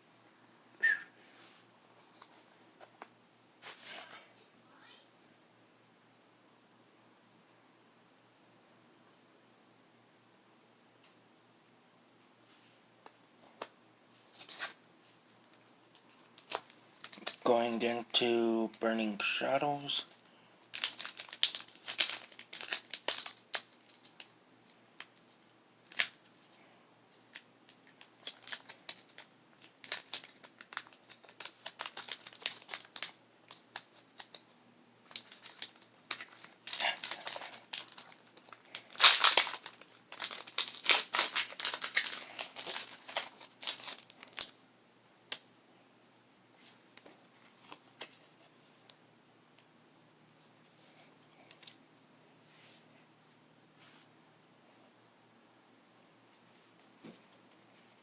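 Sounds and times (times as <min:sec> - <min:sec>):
foil wrapper crinkling and tearing: 0:14.3 - 0:14.8, 0:16.0 - 0:17.5, 0:19.2 - 0:24.3, 0:27.3 - 0:44.6.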